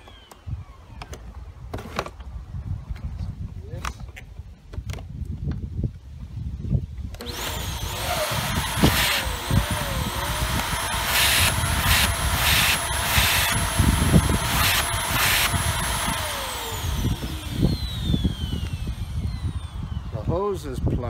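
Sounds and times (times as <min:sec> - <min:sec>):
vacuum motor whine: 0:07.1 - 0:20.6.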